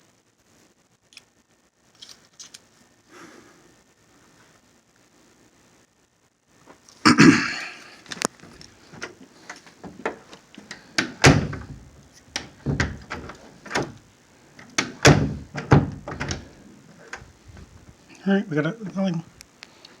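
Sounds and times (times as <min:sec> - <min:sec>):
door latch clicks and rattles: 0:10.0 - 0:14.0, 0:14.6 - 0:17.3
door thumping shut: 0:11.0 - 0:14.0, 0:14.7 - 0:17.7.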